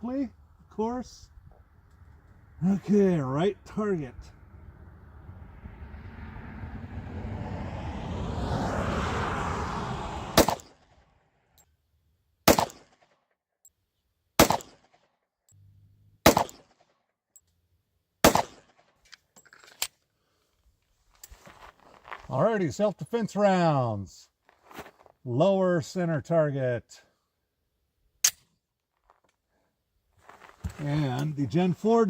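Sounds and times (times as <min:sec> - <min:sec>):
pistol shots: 0:10.4 - 0:10.7, 0:12.5 - 0:13.0, 0:14.4 - 0:15.0, 0:16.2 - 0:16.8, 0:18.2 - 0:18.8.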